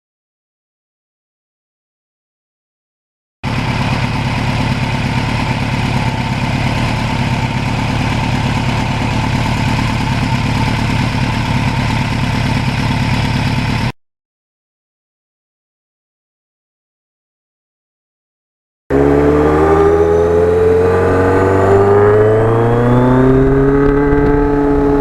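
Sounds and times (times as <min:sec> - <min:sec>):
motorcycle engine running: 0:03.4 - 0:13.9, 0:18.9 - 0:25.0.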